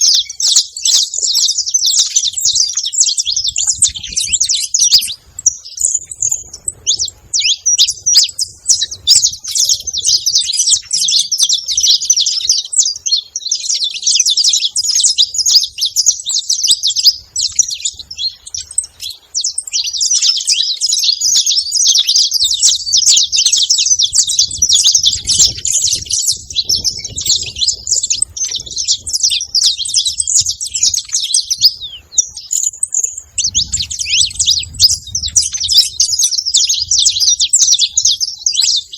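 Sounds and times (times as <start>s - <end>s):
finches chirping and singing: 0.0s - 38.9s.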